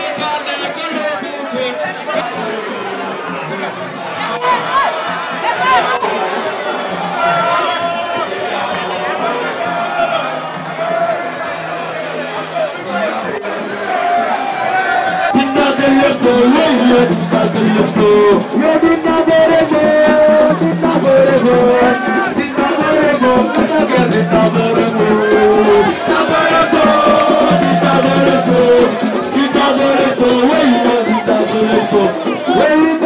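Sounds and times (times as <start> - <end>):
rattling shaker percussion: 9.5 - 33.0.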